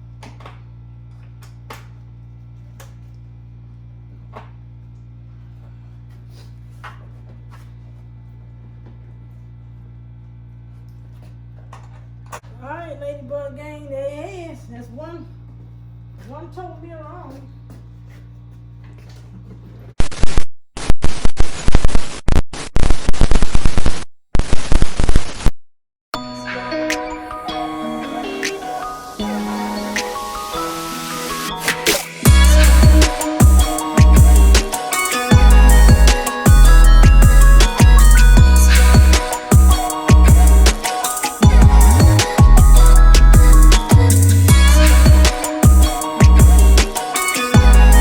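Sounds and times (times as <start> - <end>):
loud static crackling: 20.0 - 25.5
steady low hum: 32.2 - 40.8, 41.4 - 46.9.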